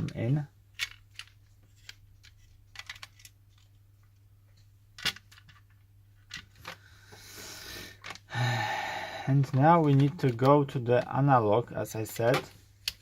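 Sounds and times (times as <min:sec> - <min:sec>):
plastic controller parts clicking: 0:00.0 - 0:03.8, 0:09.4 - 0:11.2.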